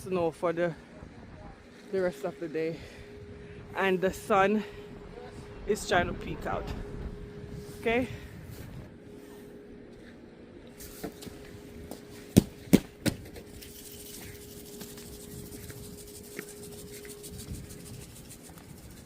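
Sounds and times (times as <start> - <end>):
faint steady hum: 0.0 - 19.0
salt grains ticking on pavement: 13.5 - 19.0.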